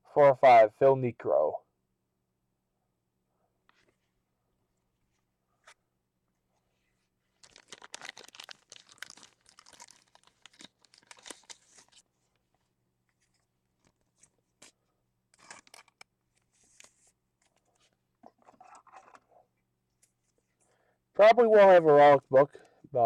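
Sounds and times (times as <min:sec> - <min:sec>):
wrappers crinkling and tearing: 0:07.4 - 0:12.0, 0:15.4 - 0:16.0.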